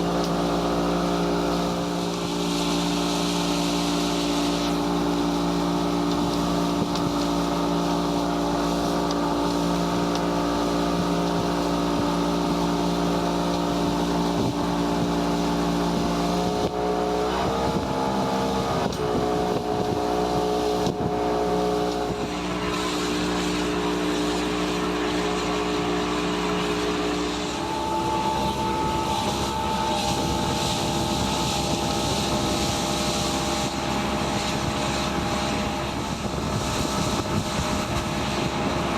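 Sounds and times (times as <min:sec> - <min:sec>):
water hiss: 0:00.0 - 0:16.7
motorboat engine running: 0:00.0 - 0:38.9
wind: 0:00.0 - 0:38.9.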